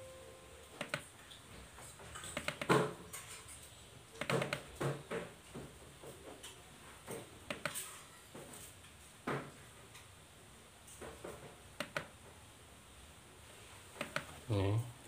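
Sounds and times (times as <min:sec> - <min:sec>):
laptop knocks and clicks: 0:02.4 - 0:03.0, 0:04.2 - 0:05.3.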